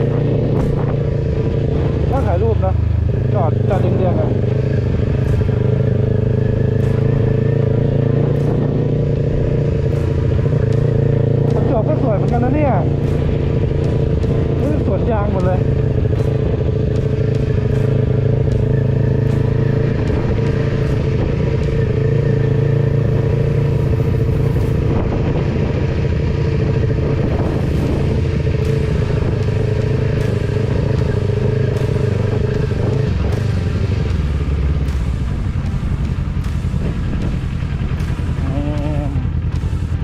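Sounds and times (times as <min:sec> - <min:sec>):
motorcycle engine running: 0:00.0 - 0:40.0.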